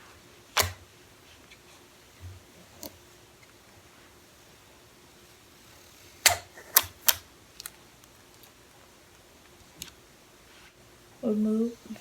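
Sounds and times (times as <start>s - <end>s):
sharp clicks: 6.2s - 7.8s.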